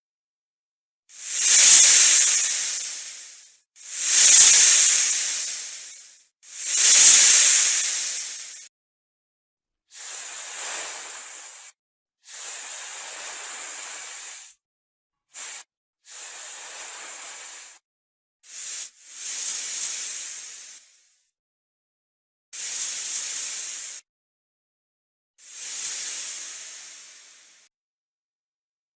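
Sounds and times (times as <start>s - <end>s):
snake hissing: 1.1s - 8.7s, 10.0s - 14.6s, 15.3s - 17.8s, 18.4s - 21.2s, 22.6s - 24.1s, 25.4s - 27.7s.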